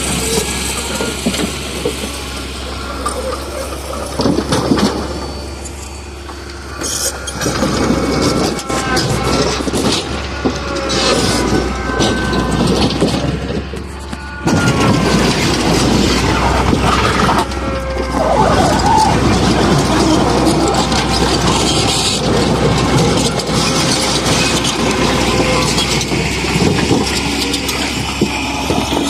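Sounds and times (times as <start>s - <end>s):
heavy machinery engine under load: 0.0s - 29.0s
concrete rubble clattering and scraping: 3.0s - 5.8s, 6.8s - 29.0s.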